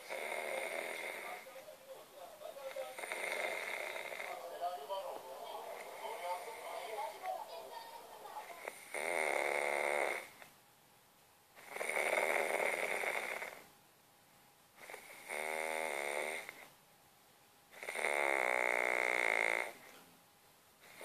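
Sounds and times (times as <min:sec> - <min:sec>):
person snoring: 0:00.0 - 0:01.5, 0:02.7 - 0:04.4, 0:05.6 - 0:07.0, 0:08.4 - 0:10.3, 0:11.6 - 0:13.6, 0:14.8 - 0:16.6, 0:17.8 - 0:19.8.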